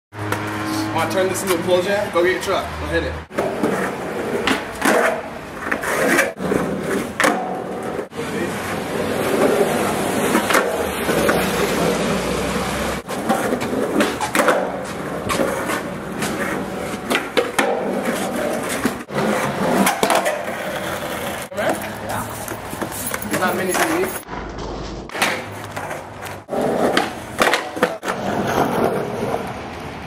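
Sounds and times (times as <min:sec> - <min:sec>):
skateboard wheels rolling on pavement: 0:00.1 - 0:30.0
skateboard clacking on ground: 0:03.3 - 0:11.9, 0:13.0 - 0:29.9.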